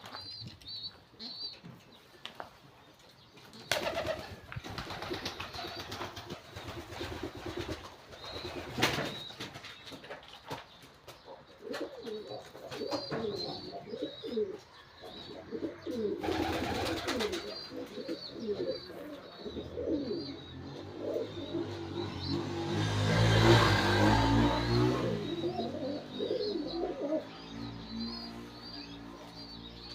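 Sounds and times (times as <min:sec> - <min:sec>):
pigeons cooing: 0:03.5 - 0:09.3, 0:11.3 - 0:29.5.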